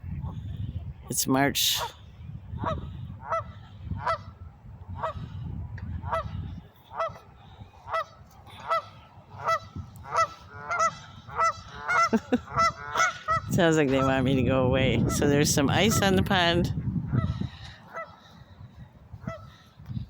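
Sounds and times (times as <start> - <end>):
geese honking: 2.6 - 4.3, 6.0 - 14.3, 15.0 - 16.2, 17.2 - 18.3, 19.2 - 19.6.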